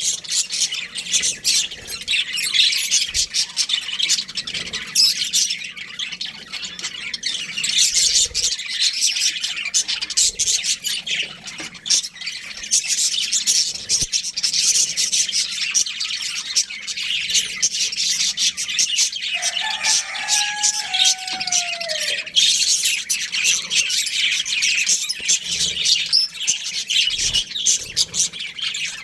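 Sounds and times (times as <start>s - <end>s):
parrots chattering: 0.0s - 29.0s
parrot squawks: 19.4s - 22.6s.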